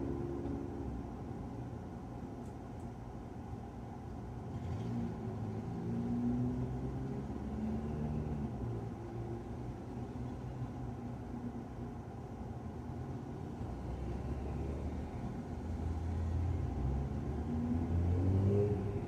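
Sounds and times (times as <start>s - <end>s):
muffled vehicle engine passing: 4.5s - 10.8s, 13.6s - 19.0s.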